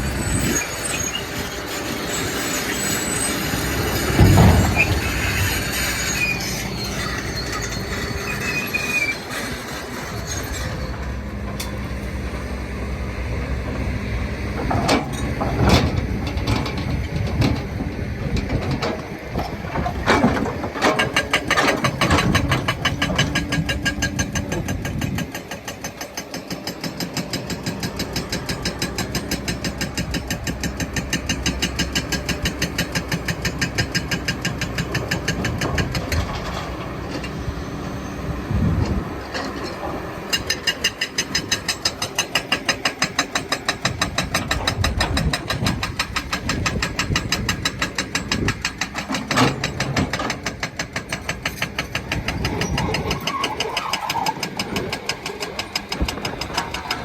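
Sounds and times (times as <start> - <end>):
excavator diesel engine throbbing: 26.6 - 57.0.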